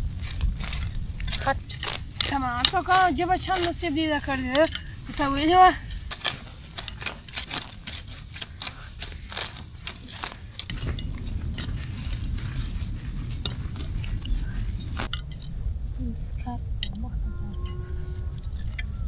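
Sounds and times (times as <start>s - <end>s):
small hard objects clinking: 0.0s - 15.2s
low rumble: 0.0s - 19.0s.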